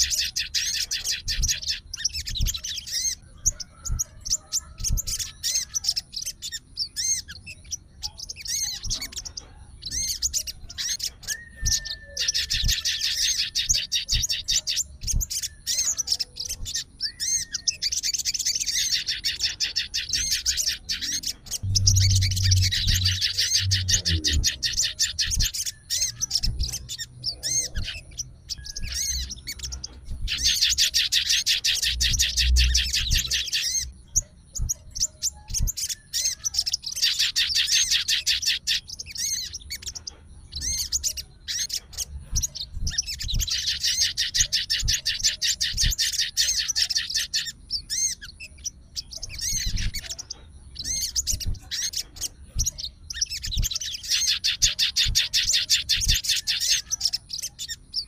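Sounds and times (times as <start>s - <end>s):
jay rattling trills: 21.6s - 25.7s.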